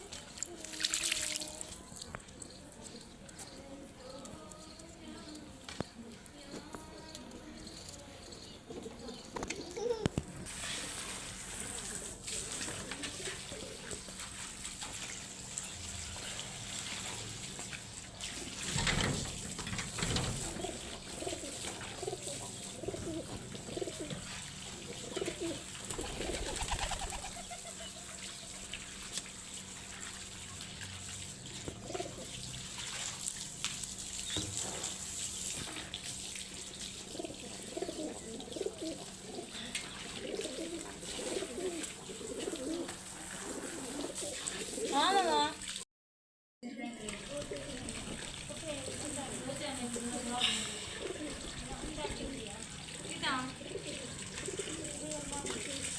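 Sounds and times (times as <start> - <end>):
water splashes from bathing pigeon: 0.0 - 2.4, 10.4 - 45.8, 47.0 - 55.9
pigeons cooing: 8.4 - 10.2, 12.7 - 14.4, 18.4 - 28.6, 31.5 - 32.5, 36.9 - 45.3, 47.2 - 55.9.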